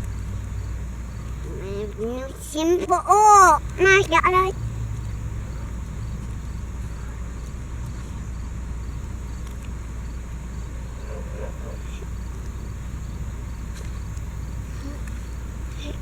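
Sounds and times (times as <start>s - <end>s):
background hiss: 0.0s - 16.0s
faint child's vocal sound: 1.4s - 4.6s, 14.7s - 16.0s.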